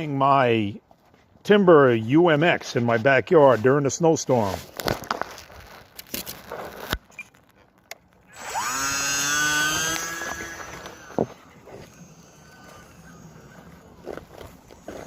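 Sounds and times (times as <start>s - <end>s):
electric motor and propeller whine: 8.2s - 15.0s.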